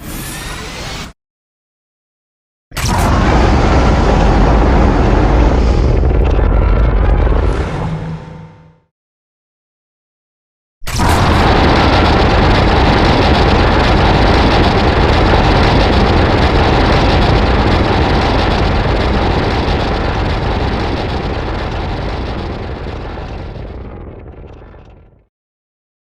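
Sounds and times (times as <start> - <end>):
loud rushing noise with deep rumble: 2.8 - 8.9, 10.9 - 25.2.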